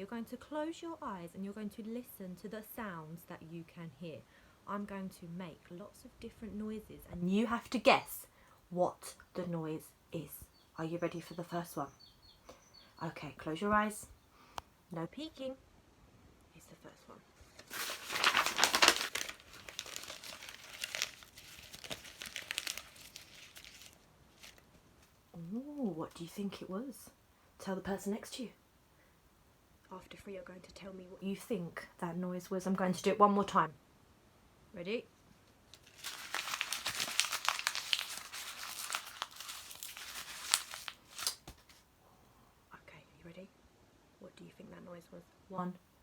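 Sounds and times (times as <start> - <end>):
paper being scrunched up: 17.6 - 24.6, 35.8 - 41.8.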